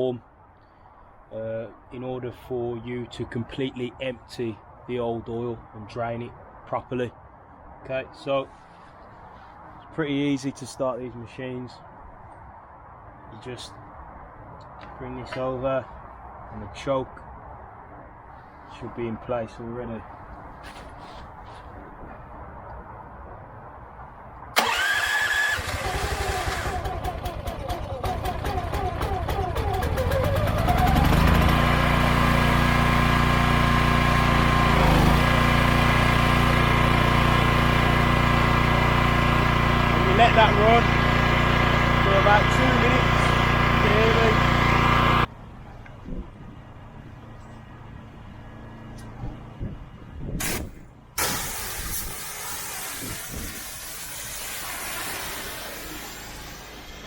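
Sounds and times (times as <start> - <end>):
pressure washer engine running: 25.6 - 45.3, 50.4 - 57.0
loud steady hiss: 50.4 - 57.0.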